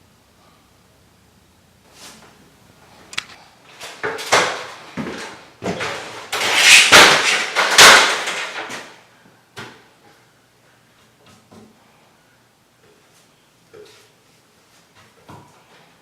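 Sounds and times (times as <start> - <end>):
knocks bumps and clattering: 3.8 - 9.0.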